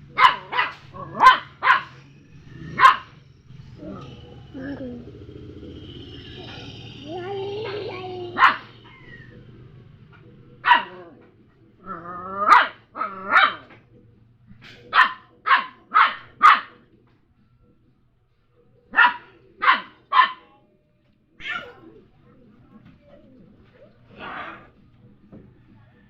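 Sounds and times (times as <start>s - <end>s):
dog barking: 0.0s - 3.2s, 7.6s - 9.3s, 10.1s - 13.9s, 14.6s - 17.0s, 18.8s - 20.6s, 23.8s - 24.8s.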